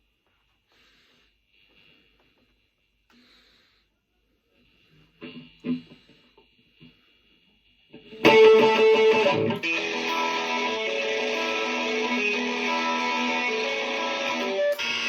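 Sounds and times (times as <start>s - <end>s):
loud strummed guitar: 8.1s - 15.0s.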